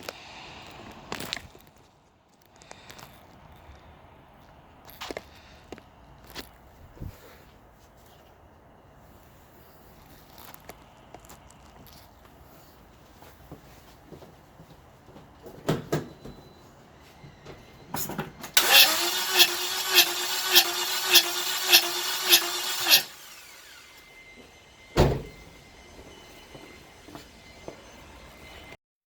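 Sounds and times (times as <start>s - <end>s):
starter motor cranking engine: 18.6s - 24.4s.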